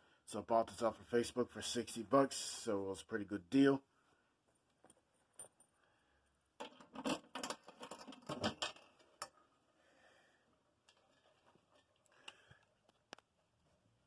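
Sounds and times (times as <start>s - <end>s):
hard objects clicking and rattling: 6.6s - 9.5s.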